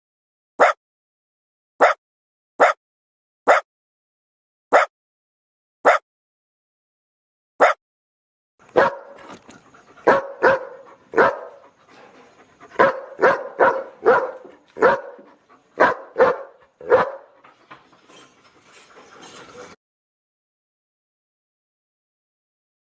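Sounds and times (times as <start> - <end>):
dog barking: 0.6 - 0.8, 1.8 - 2.0, 2.6 - 2.8, 3.5 - 3.7, 4.7 - 4.9, 5.8 - 6.0, 7.6 - 7.8, 8.7 - 9.4, 10.0 - 11.7, 12.8 - 17.4.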